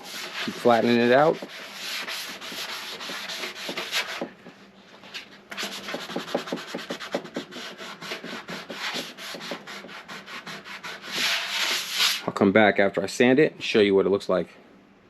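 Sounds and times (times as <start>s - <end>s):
sandpaper rubbing on filler: 0.0s - 4.3s, 5.5s - 12.3s.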